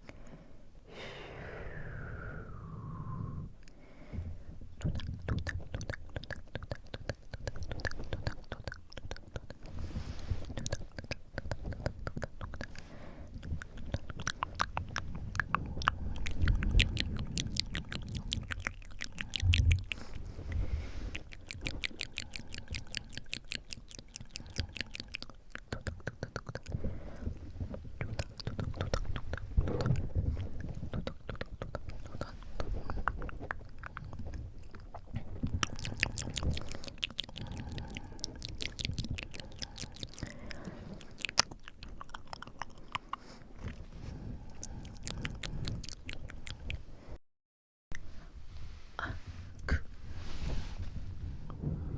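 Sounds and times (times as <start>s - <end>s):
wet tongue and lip clicks: 4.8s - 46.9s
breath puffs on microphone: 19.2s - 21.3s, 48.0s - 51.9s.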